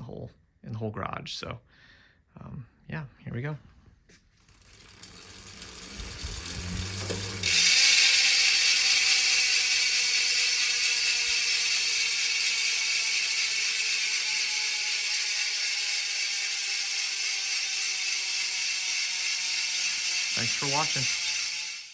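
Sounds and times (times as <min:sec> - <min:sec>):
bicycle freehub ratchet buzz: 0:04.5 - 0:21.9.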